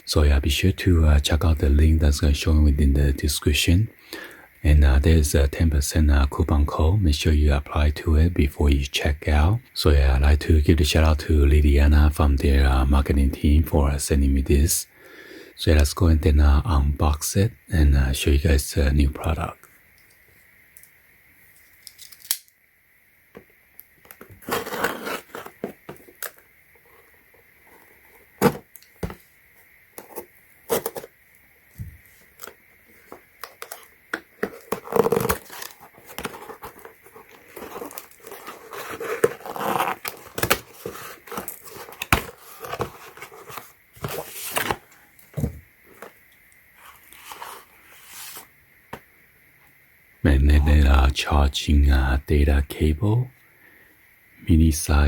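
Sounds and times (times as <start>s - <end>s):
packaging tearing and crinkling: 34.5s - 43.4s.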